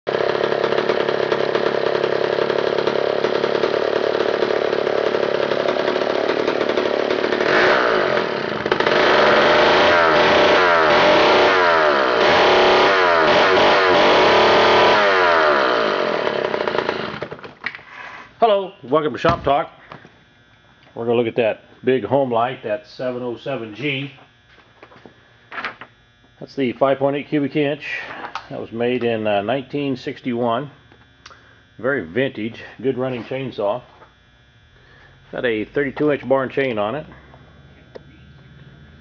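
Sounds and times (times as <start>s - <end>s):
chainsaw running: 0.1s - 18.2s.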